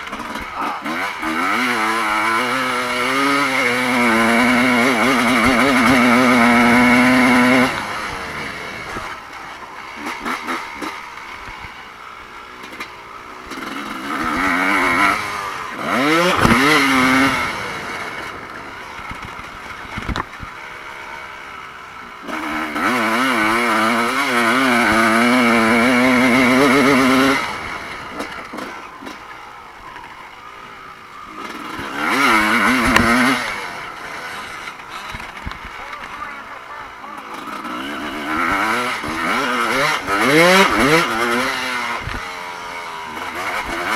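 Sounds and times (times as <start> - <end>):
motocross bikes racing past: 0.0 - 43.9.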